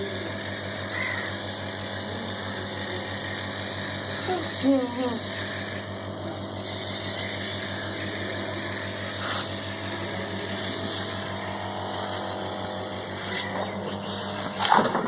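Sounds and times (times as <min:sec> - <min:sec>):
nebulizer compressor humming: 0:00.0 - 0:15.0.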